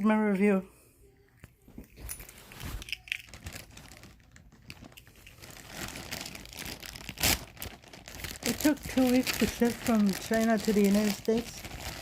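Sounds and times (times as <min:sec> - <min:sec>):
packaging crinkling: 0:02.2 - 0:12.0.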